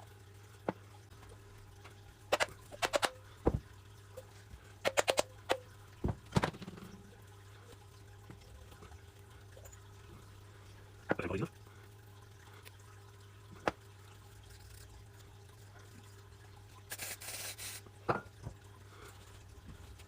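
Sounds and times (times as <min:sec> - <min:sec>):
small parts and tools clicking: 0:01.8 - 0:03.2, 0:04.8 - 0:05.6.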